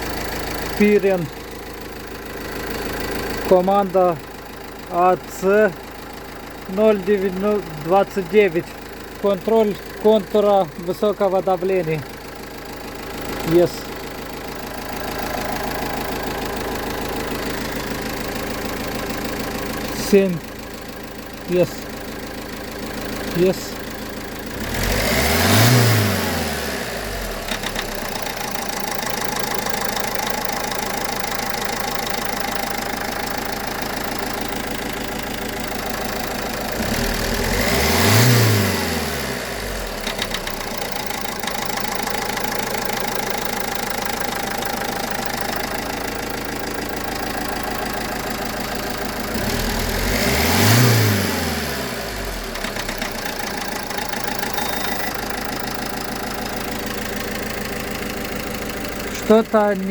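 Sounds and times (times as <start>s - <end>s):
car engine idling and revving: 0.0s - 59.9s
short engine clicks: 24.5s - 59.6s.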